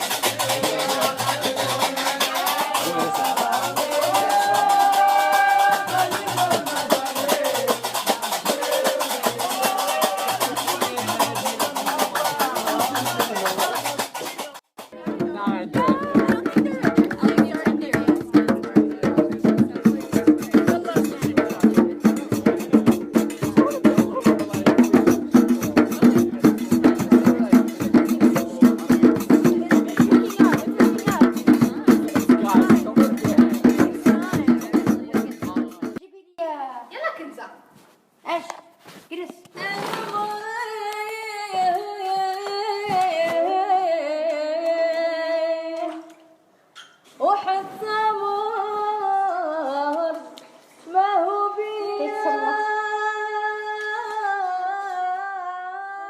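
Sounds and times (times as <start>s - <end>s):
woman singing unaccompanied: 0.0s - 10.3s, 11.5s - 36.0s, 39.6s - 46.2s, 47.2s - 56.0s
clacking hand percussion: 0.0s - 36.0s.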